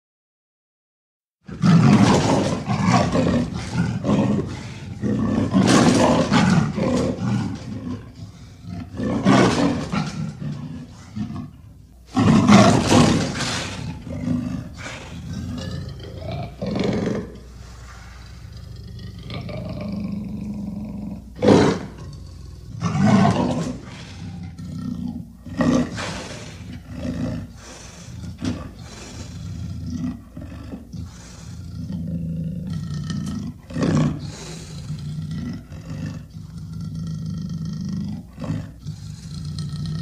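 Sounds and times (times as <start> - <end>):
big cat roaring and growling: 1.5 - 40.0.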